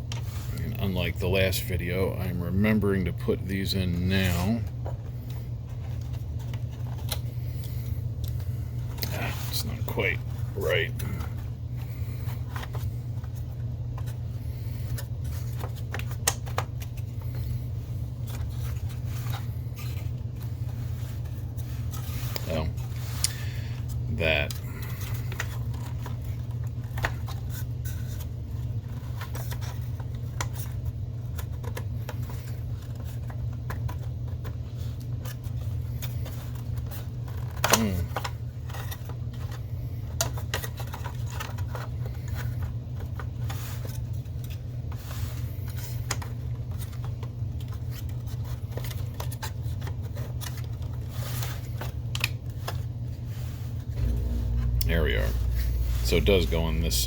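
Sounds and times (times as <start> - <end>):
steady low hum: 0.0 - 28.8, 51.0 - 57.0
clicks and scrapes of plastic parts: 18.2 - 54.8.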